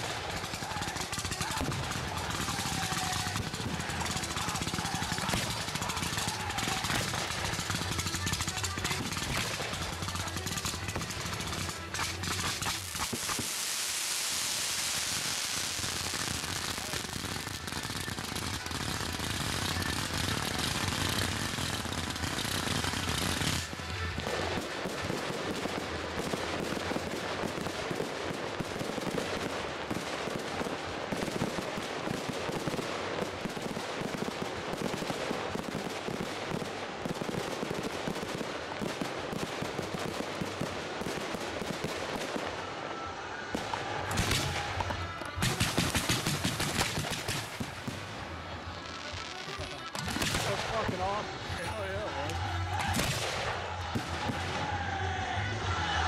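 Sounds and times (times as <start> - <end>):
fireworks crackling bangs: 0.0 - 55.2
fireworks hissing: 1.4 - 28.2.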